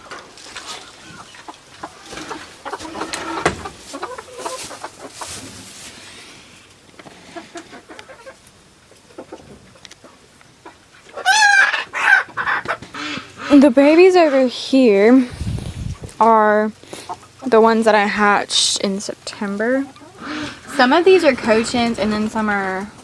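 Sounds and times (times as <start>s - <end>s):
chickens clucking: 0.0s - 23.0s
loud high chicken calls: 0.7s - 5.2s, 10.6s - 14.4s, 20.0s - 21.8s.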